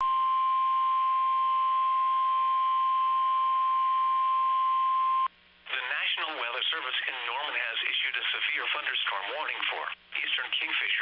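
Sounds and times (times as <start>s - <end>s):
steady high-pitched alarm tone: 0.0s - 5.3s.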